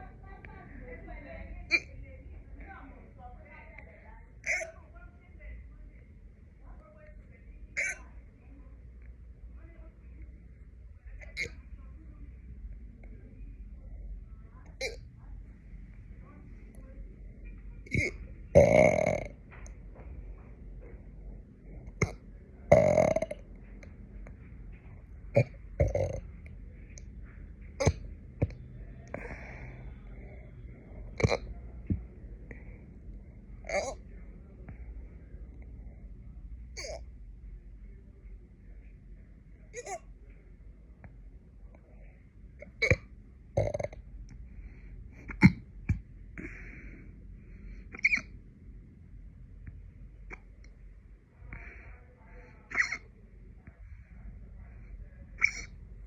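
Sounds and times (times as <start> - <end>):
person hiccuping: 1.7 - 1.9, 4.4 - 4.7, 7.8 - 8.0, 14.8 - 15.1, 17.9 - 19.3, 22.0 - 23.4, 25.4 - 26.2, 27.8 - 28.6, 31.2 - 31.5, 33.7 - 34.0, 36.8 - 37.0, 39.8 - 40.0, 42.6 - 44.0, 45.3 - 45.6, 48.0 - 48.3, 52.7 - 53.0, 55.4 - 55.7
faint breathing: 29.0 - 33.4, 44.3 - 45.4, 46.3 - 48.0, 51.3 - 52.7, 53.6 - 56.0
person breathing: 29.1 - 30.4, 46.4 - 48.0, 51.4 - 52.7.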